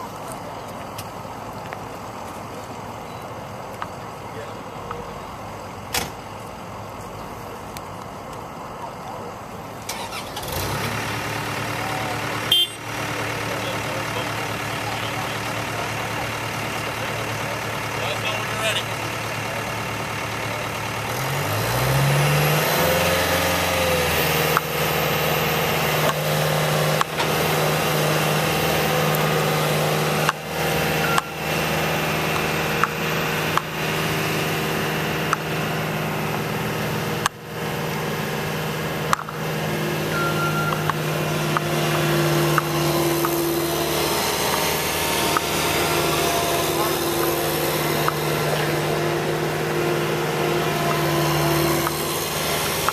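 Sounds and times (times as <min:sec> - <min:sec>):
skid steer loader engine: 0:00.0 - 0:52.9
high whine: 0:23.7 - 0:52.9.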